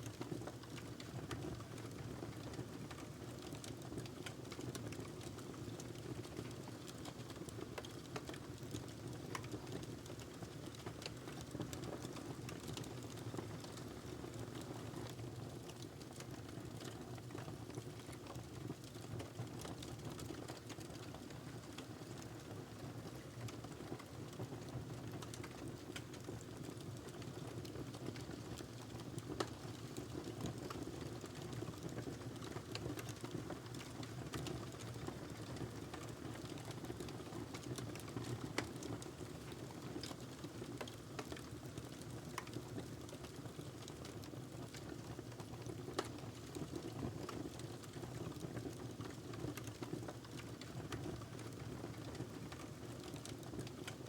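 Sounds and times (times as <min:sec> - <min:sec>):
wood fire crackling: 0:25.0 - 0:54.0.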